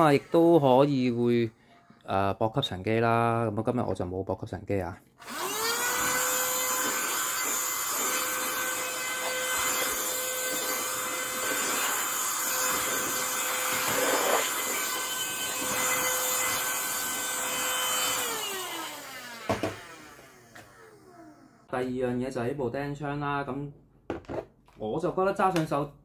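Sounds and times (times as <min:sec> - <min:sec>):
electric blower whining: 0:00.0 - 0:01.1, 0:05.2 - 0:21.7.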